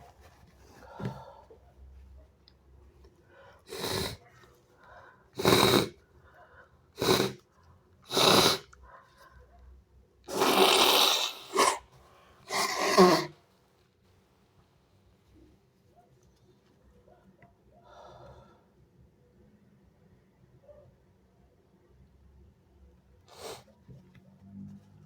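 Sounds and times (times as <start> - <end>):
person sneezing: 7.0 - 7.4, 8.1 - 8.7, 10.3 - 11.8, 12.5 - 13.4.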